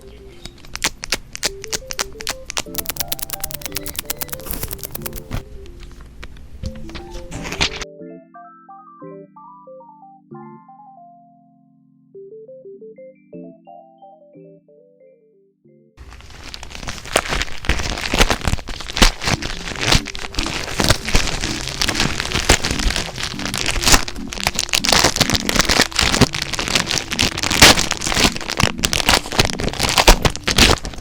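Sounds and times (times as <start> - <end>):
packaging crinkling: 0.5 - 5.4, 16.0 - 31.0
sharp clicks: 0.9 - 5.4.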